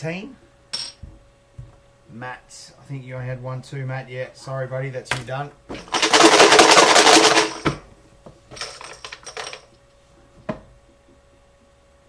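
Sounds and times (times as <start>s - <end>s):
small hard pieces rattling in container: 5.7s - 7.7s.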